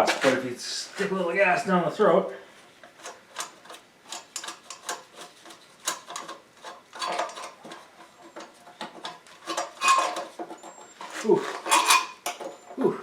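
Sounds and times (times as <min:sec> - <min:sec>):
parts clicking and clunking: 0:02.8 - 0:12.8.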